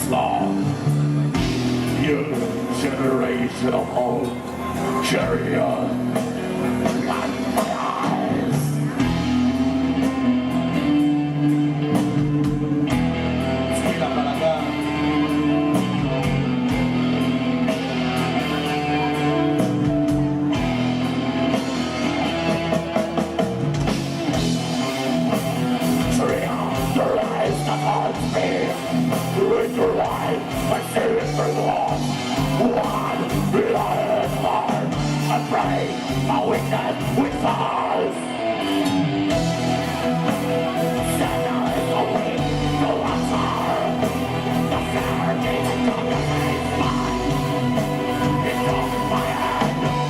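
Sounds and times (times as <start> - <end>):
metal band playing: 0.0 - 50.0
drumming: 19.6 - 37.8, 38.7 - 50.0.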